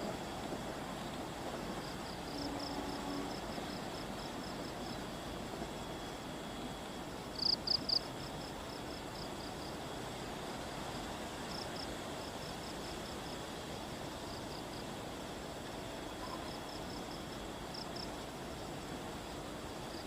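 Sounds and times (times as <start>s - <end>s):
insects chirping: 0.0s - 20.0s
steady outdoor hiss: 0.0s - 20.0s.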